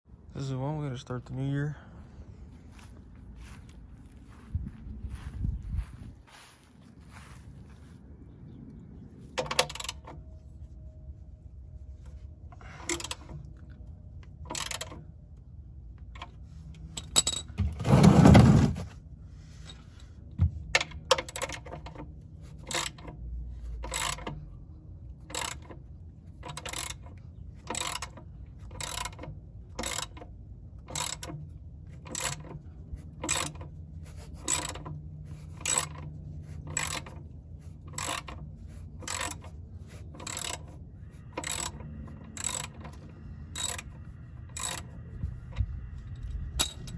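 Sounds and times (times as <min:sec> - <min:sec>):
sharp mechanical clicks: 0:14.2 - 0:15.0, 0:23.8 - 0:24.4, 0:25.2 - 0:25.8, 0:26.4 - 0:31.4, 0:32.0 - 0:33.7, 0:34.3 - 0:46.9.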